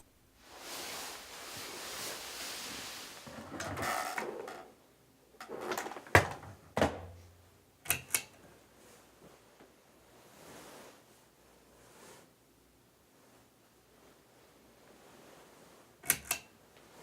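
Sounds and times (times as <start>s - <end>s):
rustling: 0.4s - 4.6s.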